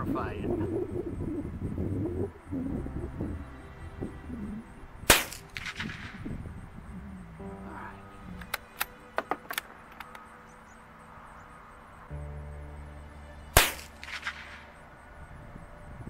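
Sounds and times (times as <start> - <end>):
rifle shot: 5.1 - 6.3, 13.6 - 14.7.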